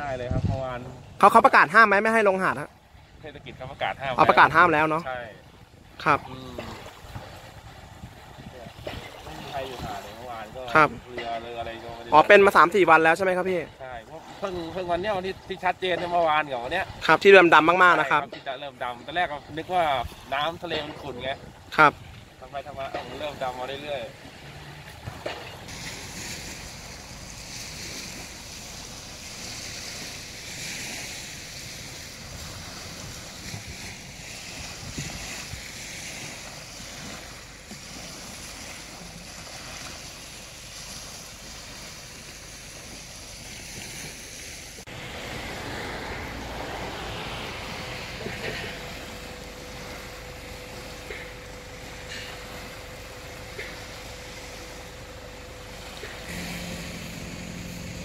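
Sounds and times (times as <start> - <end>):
wind on microphone: 0.0 - 1.2, 5.4 - 11.1, 21.1 - 22.8, 24.2 - 48.0
sea waves washing onto beach: 0.0 - 58.0.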